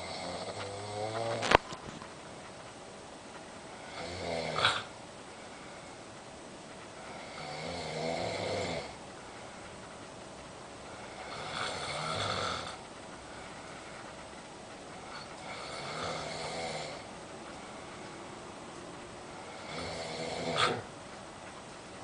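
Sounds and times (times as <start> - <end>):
low rattling snores: 0.0 - 1.6, 3.7 - 5.0, 7.0 - 9.0, 10.9 - 14.2, 15.0 - 17.9, 19.3 - 20.9.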